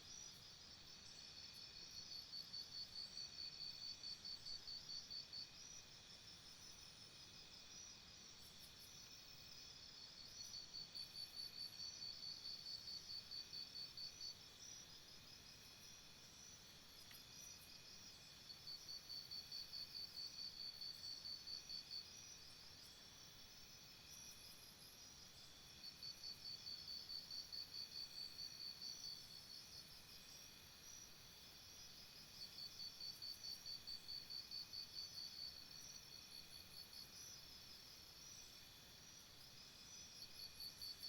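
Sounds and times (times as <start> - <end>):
pulsing insect chirp: 9.9 - 41.0.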